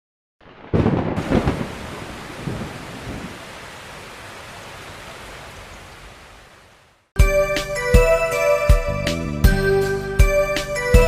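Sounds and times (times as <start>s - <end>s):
thunder rumbling: 0.4s - 4.6s
steady rain: 0.4s - 7.1s.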